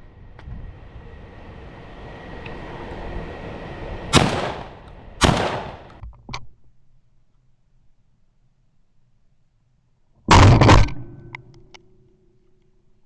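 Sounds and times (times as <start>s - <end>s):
shotgun shots: 4.2s - 6.0s.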